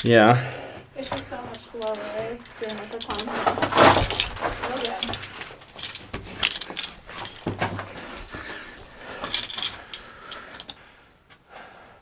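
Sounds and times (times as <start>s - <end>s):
metal climbing gear clinking: 0.0s - 10.9s.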